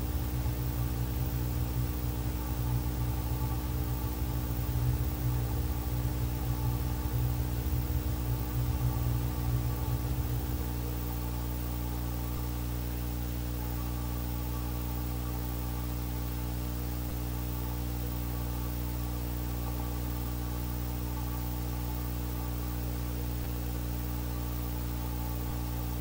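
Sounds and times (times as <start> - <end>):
low fluttering rumble: 0.0 - 12.6
electrical hum with hiss: 0.0 - 26.0.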